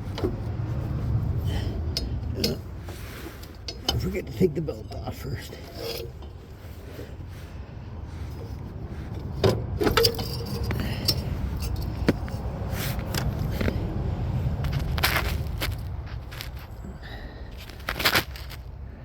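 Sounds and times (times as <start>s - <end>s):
steady low rumble: 0.0s - 19.0s
metallic clinks and rattles: 9.8s - 13.6s.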